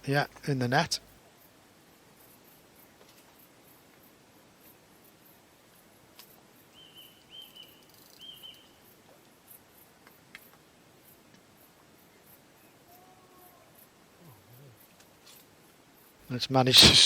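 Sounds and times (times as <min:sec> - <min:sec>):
small bird chirping: 0:06.8 - 0:08.8
low call: 0:16.4 - 0:17.0.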